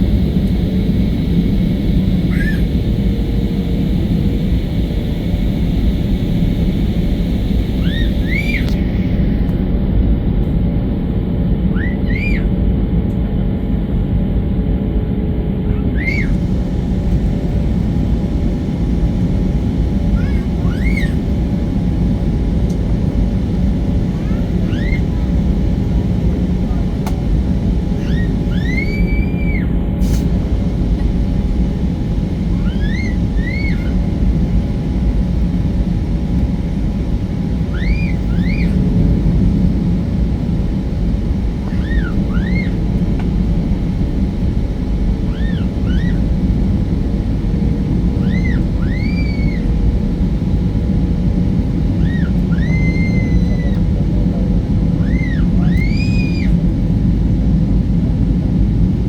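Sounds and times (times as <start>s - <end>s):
aircraft engine and airflow rumble: 0.0s - 59.0s
steady hums: 0.0s - 59.0s
high-pitched squeals: 7.3s - 9.1s, 24.1s - 25.2s, 27.9s - 29.8s, 32.5s - 34.1s, 37.7s - 38.8s, 41.6s - 42.9s, 45.2s - 46.4s, 48.2s - 49.7s, 52.0s - 54.0s, 55.0s - 56.6s.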